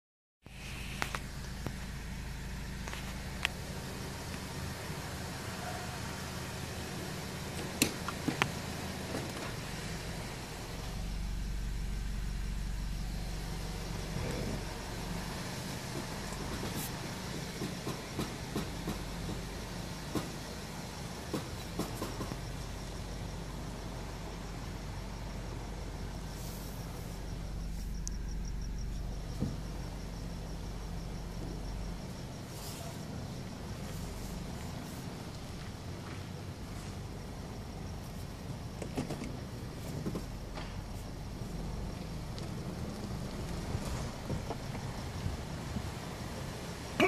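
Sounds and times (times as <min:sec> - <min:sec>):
car engine hum: 0:00.4 - 0:47.0
sharp clicks and knocks: 0:17.4 - 0:19.5, 0:21.3 - 0:22.4.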